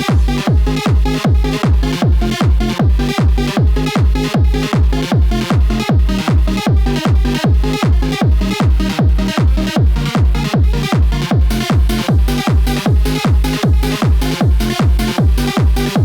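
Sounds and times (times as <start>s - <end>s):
electronic dance music: 0.0s - 16.0s
heavy kick drum: 0.0s - 16.0s.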